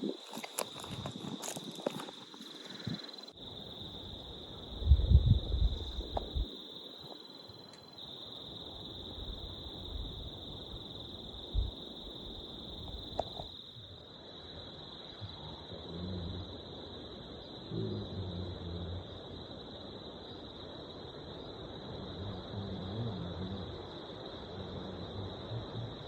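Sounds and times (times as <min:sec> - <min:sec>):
high-pitched insect trill: 0:00.0 - 0:15.6.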